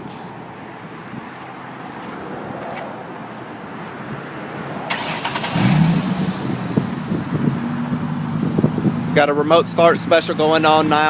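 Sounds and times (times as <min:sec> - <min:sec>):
engine starter cranking: 0:04.9 - 0:06.2
car engine idling: 0:05.0 - 0:11.0.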